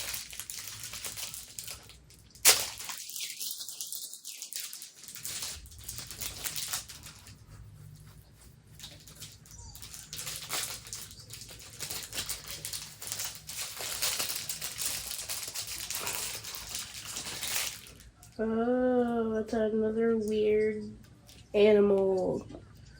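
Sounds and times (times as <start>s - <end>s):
plastic packaging crinkling: 0.0s - 7.6s, 8.7s - 18.4s
low steady hum: 5.1s - 22.9s.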